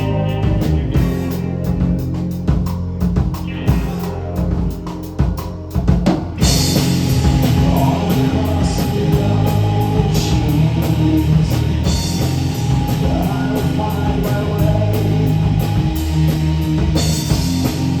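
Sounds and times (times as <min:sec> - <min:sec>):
live rock band playing: 0:00.0 - 0:18.0
cymbals washing: 0:05.6 - 0:18.0.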